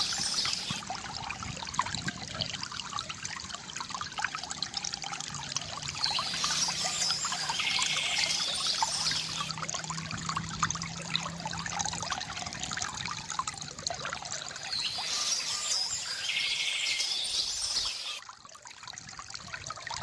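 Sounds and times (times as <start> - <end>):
birds chirping: 0.0 - 0.8, 6.0 - 9.5, 14.6 - 18.2
water trickling from fountain: 0.0 - 20.0.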